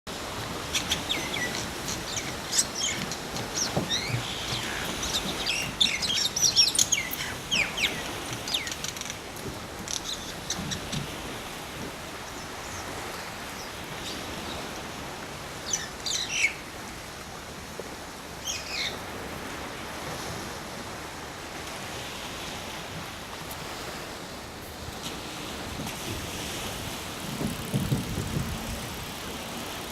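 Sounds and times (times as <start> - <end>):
birds chattering calls: 0.6 - 9.2
steady rushing background noise: 26.5 - 29.9.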